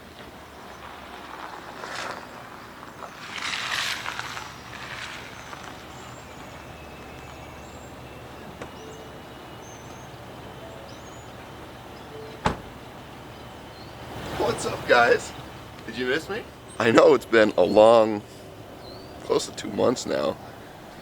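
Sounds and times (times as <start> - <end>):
vehicle passing by: 0.0 - 21.0
faint bird chirps: 4.6 - 14.6.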